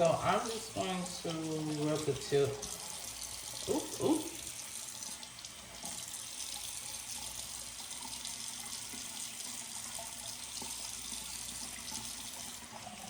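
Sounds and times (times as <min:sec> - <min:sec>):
tap water running into sink: 0:00.0 - 0:13.0.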